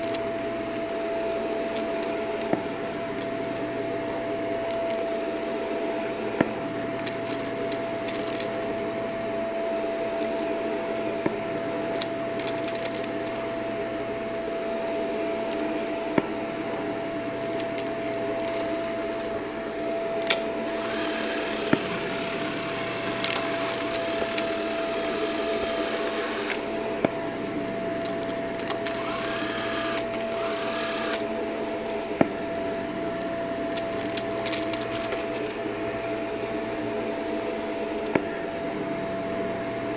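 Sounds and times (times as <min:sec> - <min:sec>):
vacuum cleaner whining: 0:15.2 - 0:39.9.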